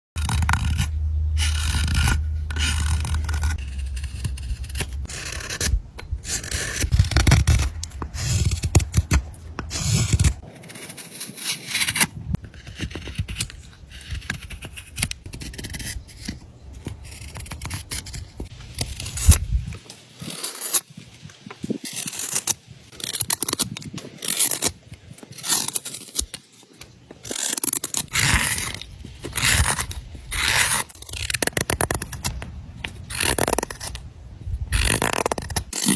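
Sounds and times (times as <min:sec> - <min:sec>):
low rumble: 0:00.2 - 0:08.6
blade scraping wet wood: 0:00.2 - 0:20.9, 0:21.8 - 0:34.0, 0:34.7 - 0:35.9.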